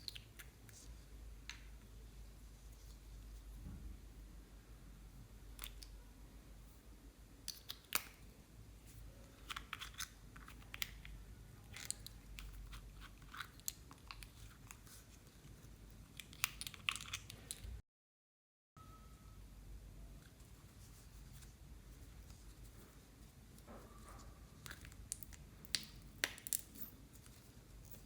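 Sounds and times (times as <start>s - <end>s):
slime crackling and popping: 24.6s - 26.8s.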